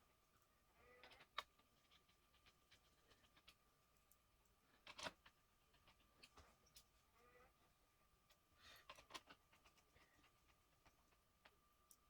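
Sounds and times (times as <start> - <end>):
faint small clicks: 0.4 - 6.9.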